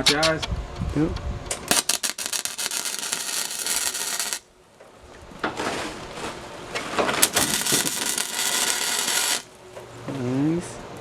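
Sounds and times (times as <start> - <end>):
sharp arc pops: 1.6 - 4.4, 7.2 - 9.5
welding arc crackling and hissing: 1.7 - 4.5, 7.2 - 9.6.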